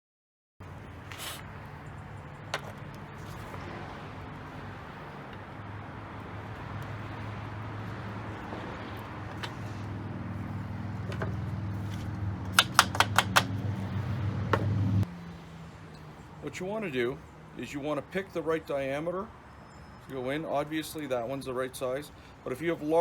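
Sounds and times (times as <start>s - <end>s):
low machine hum: 0.6s - 15.0s.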